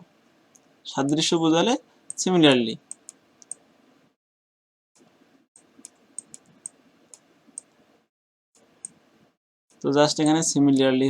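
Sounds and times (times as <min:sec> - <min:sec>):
keyboard keys typing: 0:05.8 - 0:07.8.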